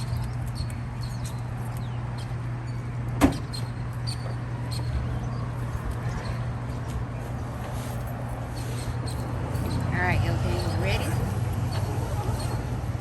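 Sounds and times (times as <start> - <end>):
low mechanical hum: 0.0 - 9.9.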